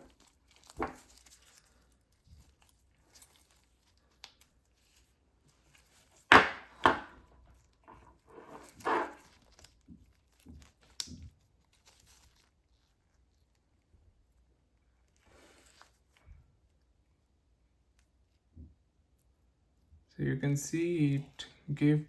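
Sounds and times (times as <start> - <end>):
sharp knock: 6.3 - 7.1.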